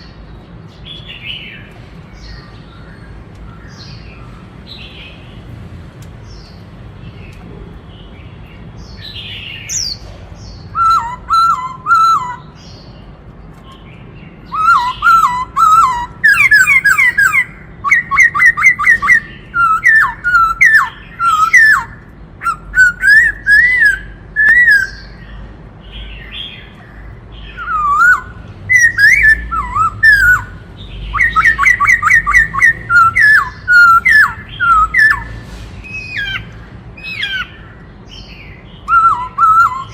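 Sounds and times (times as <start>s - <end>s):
bird singing whistled notes: 8.8s - 13.0s, 13.7s - 39.9s.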